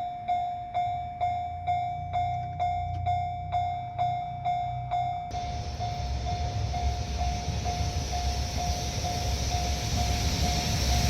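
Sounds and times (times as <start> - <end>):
freight train passing: 0.0 - 11.0
low rumble: 1.6 - 11.0.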